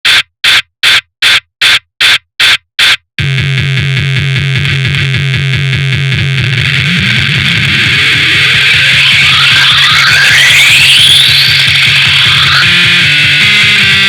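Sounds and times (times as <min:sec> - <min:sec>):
distorted buzzing synth with beat: 0:00.0 - 0:14.0
sharp noise bursts: 0:04.6 - 0:14.0.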